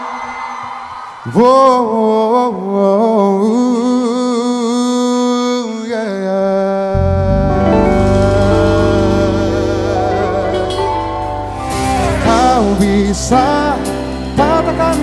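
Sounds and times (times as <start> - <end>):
man singing long wordless notes: 1.2 - 15.0
deep bass notes: 6.9 - 15.0
soft accompaniment: 7.0 - 15.0.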